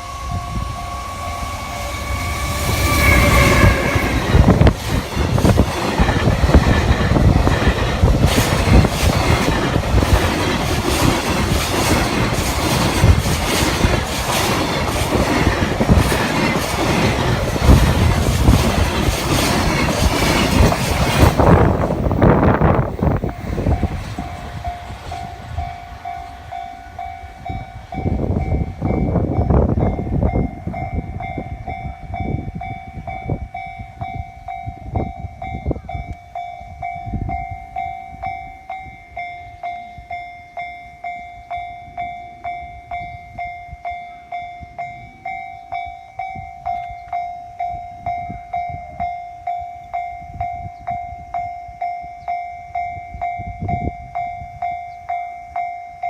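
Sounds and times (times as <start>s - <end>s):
train wheels clattering: 1.4s - 29.1s.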